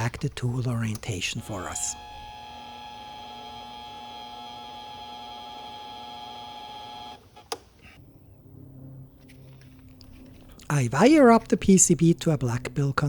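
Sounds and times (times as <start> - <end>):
lathe motor whining: 0.0 - 8.0.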